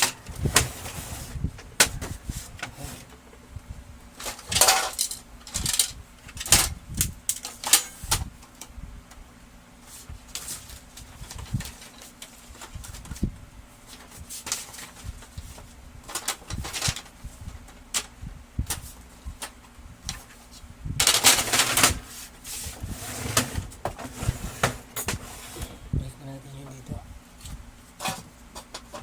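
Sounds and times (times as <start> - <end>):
plastic scraping rustle: 0.0 - 3.3, 20.1 - 25.9.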